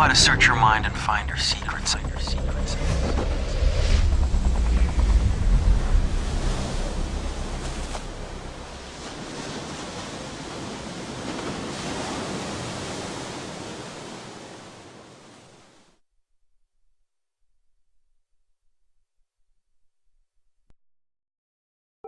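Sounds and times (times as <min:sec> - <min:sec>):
deep low boom: 0:00.0 - 0:09.2.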